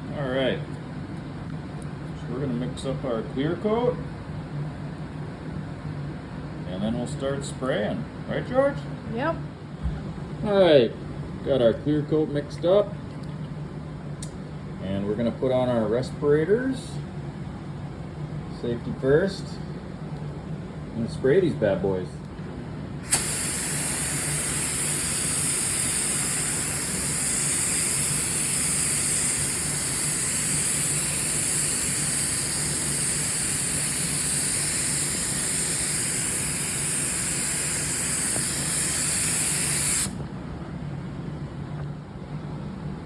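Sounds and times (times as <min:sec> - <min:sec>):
spray gun hiss: 0:23.0 - 0:40.2.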